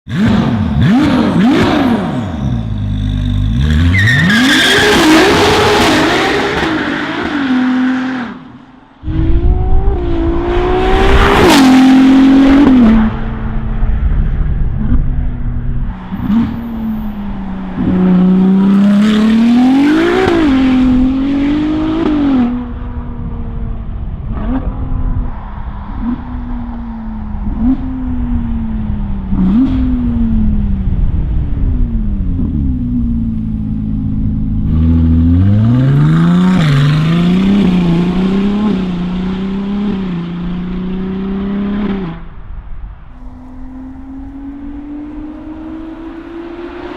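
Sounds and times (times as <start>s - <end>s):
car engine revving: 0.1s - 13.8s, 15.9s - 22.7s, 43.2s - 46.9s.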